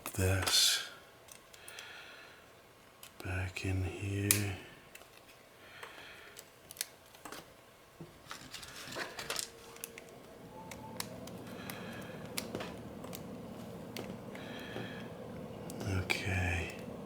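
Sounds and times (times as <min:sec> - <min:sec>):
faint steady hum: 0:00.0 - 0:17.0
plastic parts clicking: 0:04.3 - 0:07.5, 0:08.3 - 0:14.2.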